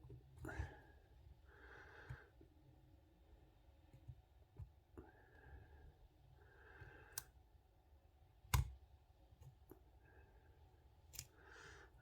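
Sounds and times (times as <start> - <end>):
soft breaths: 0.2 - 7.4, 9.7 - 12.0.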